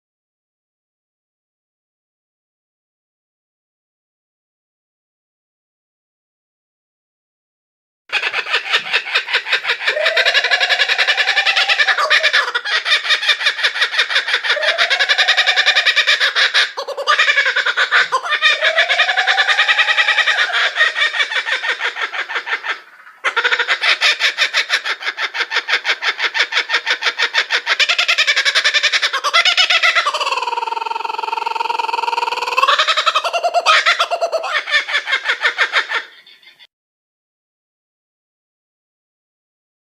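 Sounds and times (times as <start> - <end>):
bird rapidly pulsing call: 29.2 - 34.5.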